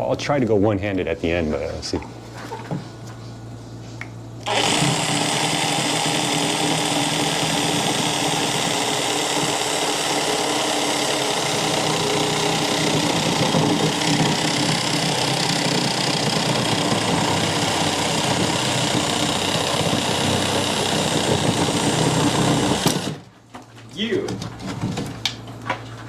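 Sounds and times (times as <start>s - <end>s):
power saw cutting pipe: 4.4s - 23.2s.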